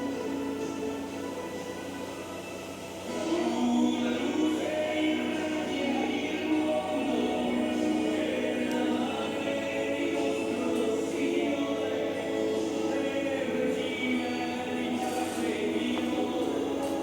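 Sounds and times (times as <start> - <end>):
choir singing long notes: 3.1 - 17.0.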